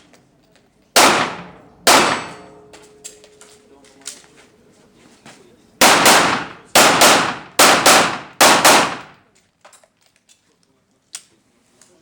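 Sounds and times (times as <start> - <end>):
pistol shots with echo: 1.0 - 2.7, 5.8 - 9.3.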